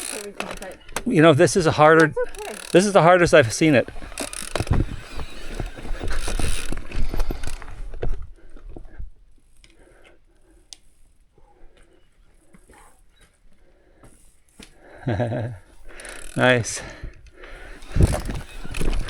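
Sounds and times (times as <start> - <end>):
dense clicks: 0.0 - 8.1, 15.8 - 19.0
mountain bike rattling over rocks: 0.0 - 8.2, 15.8 - 19.0.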